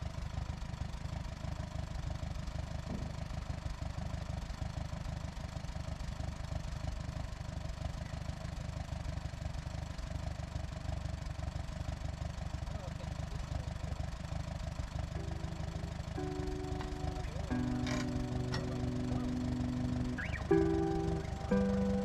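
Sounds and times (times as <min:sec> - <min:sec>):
sawmill engine running: 0:15.0 - 0:22.0.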